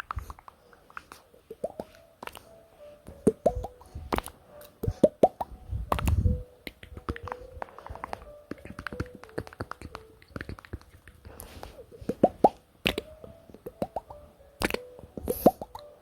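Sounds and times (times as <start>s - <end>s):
wet mouth clicks and lip smacks: 0.0s - 2.4s, 5.0s - 11.3s, 14.6s - 15.8s
low rumbling blow: 5.6s - 6.4s.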